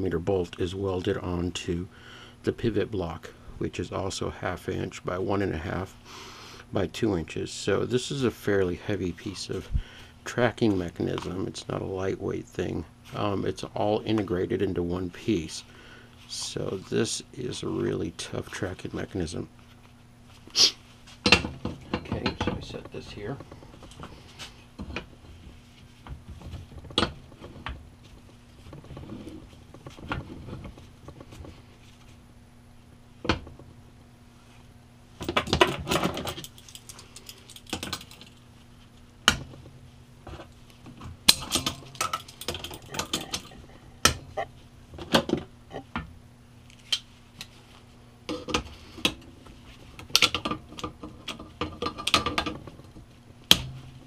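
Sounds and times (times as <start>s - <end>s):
faint steady hum: 0.0s - 54.0s
steel parts clinking and clanking: 35.3s - 38.4s, 41.3s - 44.2s.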